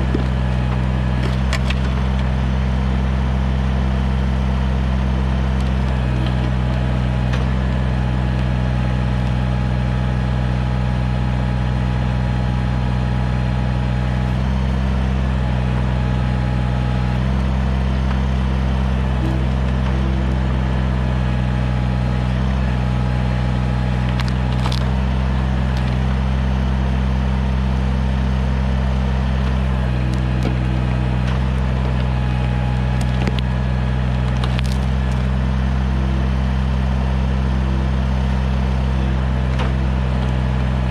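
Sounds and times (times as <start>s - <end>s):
wood and roots cracking: 0.0s - 2.4s, 23.6s - 26.8s, 28.5s - 35.9s
diesel tractor engine under load: 0.0s - 40.9s.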